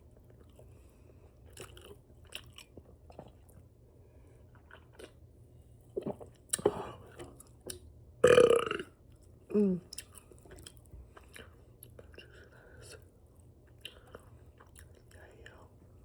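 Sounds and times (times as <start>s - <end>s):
open-mouthed chewing smacks: 13.7s - 15.2s.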